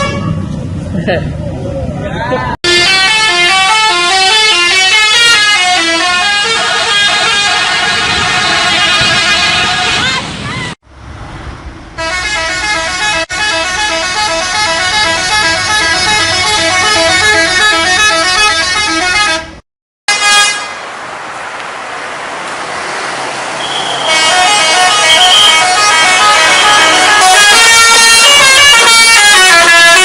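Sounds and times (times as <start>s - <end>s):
multi-tone bus horn melody: 0.0s - 0.5s, 2.6s - 10.8s, 12.0s - 20.8s, 23.6s - 30.0s
rushing noise: 20.6s - 27.3s.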